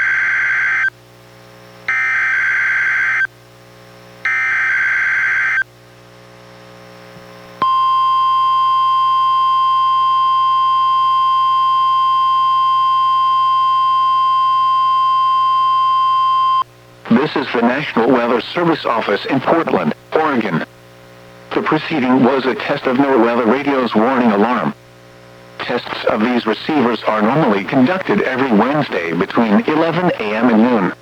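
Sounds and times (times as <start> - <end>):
steady warning alarm tone: 1.9 - 3.3, 4.2 - 5.6, 7.6 - 19.7.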